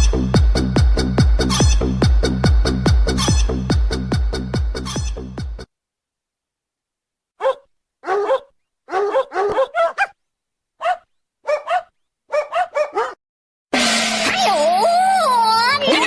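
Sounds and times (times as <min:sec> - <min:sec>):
dog barking high-pitched: 0:07.4 - 0:10.2, 0:10.8 - 0:13.2.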